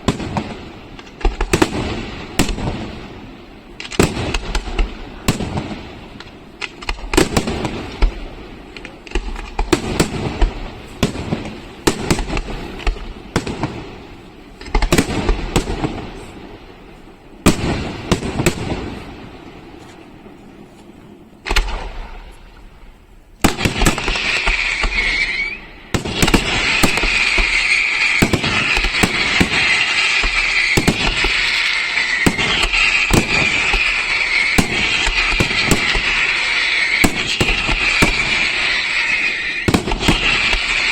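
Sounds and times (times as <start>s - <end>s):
fireworks bursting: 0.0s - 40.9s
high shrill tone: 27.0s - 40.9s.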